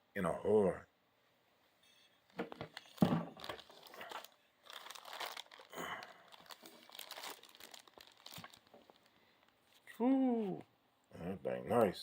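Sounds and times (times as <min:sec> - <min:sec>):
plastic packaging crinkling: 0:02.3 - 0:09.6.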